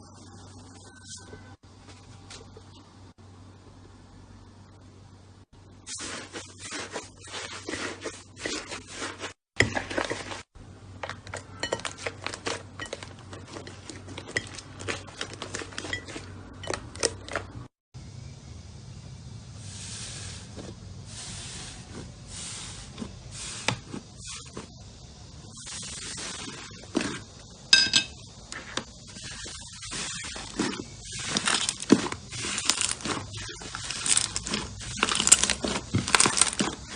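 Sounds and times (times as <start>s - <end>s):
slime squishing: 28.6s - 36.9s.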